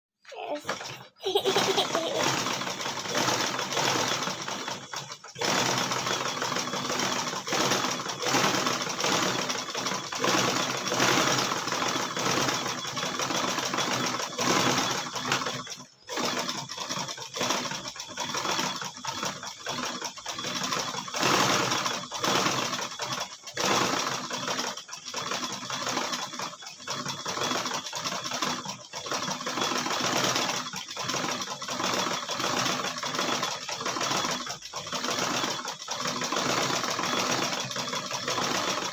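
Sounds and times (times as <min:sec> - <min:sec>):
sewing machine running: 0:00.4 - 0:38.9.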